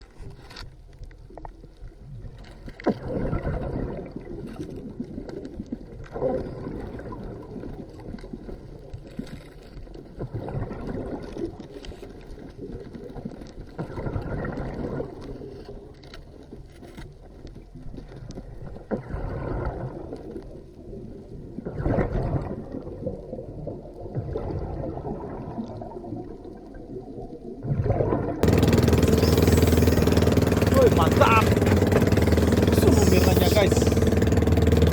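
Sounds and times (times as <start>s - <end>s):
bubbles gurgling: 2.9s - 8.1s, 13.8s - 15.2s, 18.9s - 34.9s
steady engine-like hum: 28.4s - 34.9s
diver breathing out underwater: 28.7s - 34.9s.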